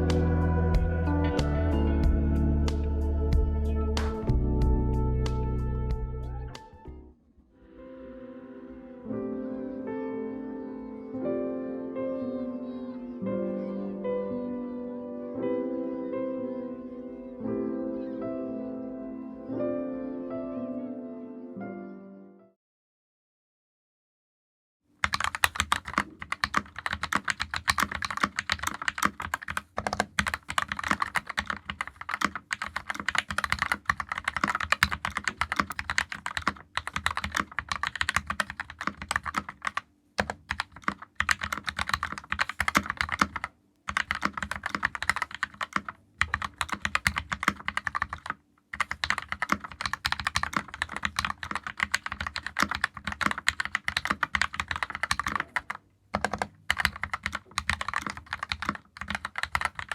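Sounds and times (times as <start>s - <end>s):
mechanical keyboard typing: 25.0s - 59.9s.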